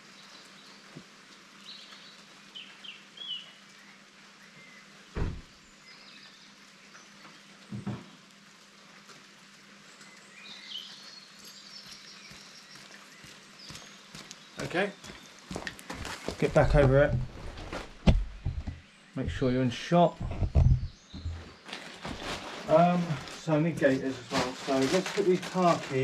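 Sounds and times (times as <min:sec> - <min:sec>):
light rain hissing: 0:00.0 - 0:26.0
small birds chirping: 0:00.0 - 0:26.0
dull thumps: 0:16.3 - 0:19.4, 0:20.1 - 0:22.4.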